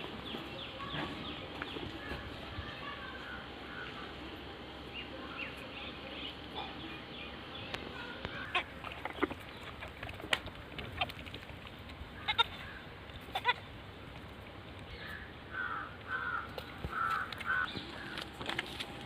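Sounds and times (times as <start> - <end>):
steady background hiss: 0.0 - 19.0
goats bleating: 12.2 - 12.7, 13.3 - 13.6.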